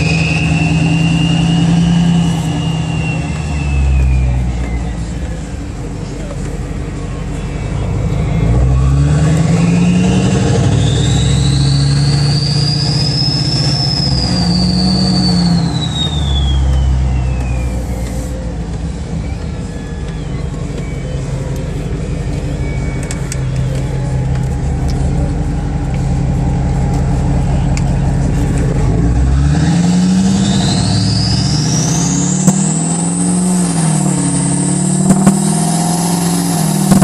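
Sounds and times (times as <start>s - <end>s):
turbo whistling: 0.0s - 5.4s, 7.6s - 28.0s, 28.9s - 37.0s
diesel engine revving: 0.0s - 37.0s.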